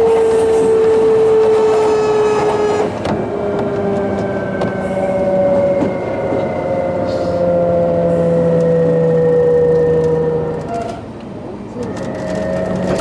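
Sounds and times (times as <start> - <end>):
rail running noise: 0.0 - 13.0
train motor whine gliding downward: 0.0 - 13.0.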